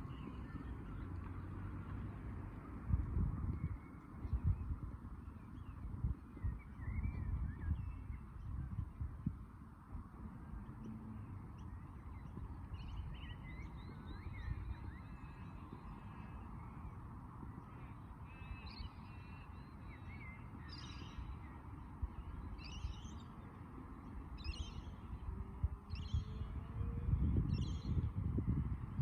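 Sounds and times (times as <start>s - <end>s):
low background noise: 0.0s - 29.0s
birds chirping and whistling: 5.2s - 8.4s, 11.6s - 17.0s.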